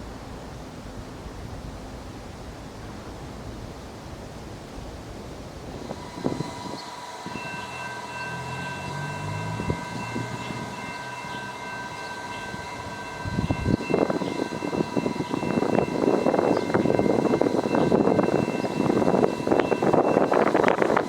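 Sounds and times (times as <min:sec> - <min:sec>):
train passing: 0:00.0 - 0:21.0
train rattling: 0:04.2 - 0:21.0
steady high tone: 0:05.7 - 0:21.0.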